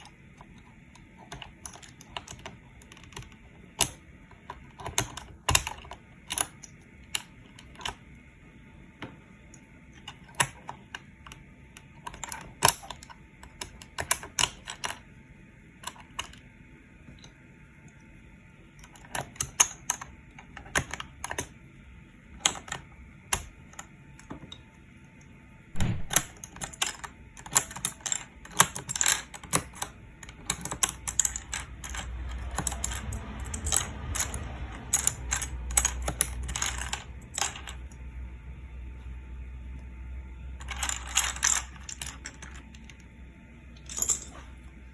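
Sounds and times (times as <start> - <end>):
low rumble of handling: 25.8 - 26.4, 29.8 - 44.9
mechanical keyboard keys clicking: 25.8 - 26.4.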